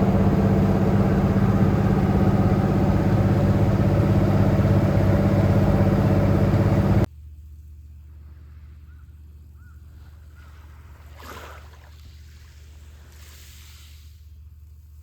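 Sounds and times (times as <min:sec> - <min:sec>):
motor engine running: 0:00.0 - 0:07.1.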